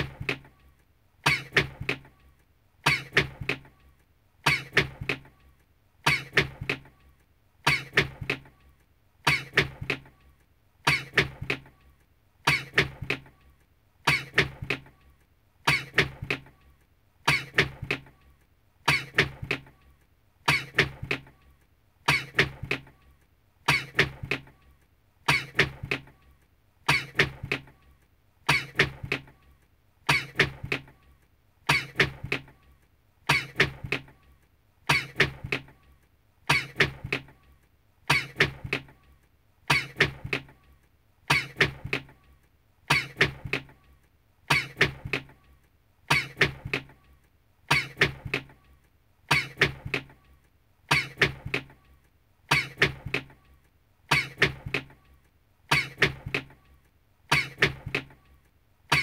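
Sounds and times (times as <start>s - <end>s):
person sneezing: 4.4s - 4.9s, 7.7s - 8.1s, 9.2s - 9.7s, 12.5s - 12.9s, 14.1s - 14.5s, 15.7s - 16.1s, 17.3s - 17.7s, 18.8s - 19.3s, 20.5s - 20.9s, 22.1s - 22.6s, 23.7s - 24.1s, 25.3s - 25.8s, 26.9s - 27.4s, 28.5s - 28.9s, 30.1s - 30.6s, 31.7s - 32.2s, 33.3s - 33.7s, 34.9s - 35.3s, 41.3s - 41.8s, 44.5s - 44.9s, 47.7s - 48.1s, 49.3s - 49.8s, 50.9s - 51.3s, 52.5s - 53.0s, 54.1s - 54.6s, 55.7s - 56.2s, 57.3s - 57.8s.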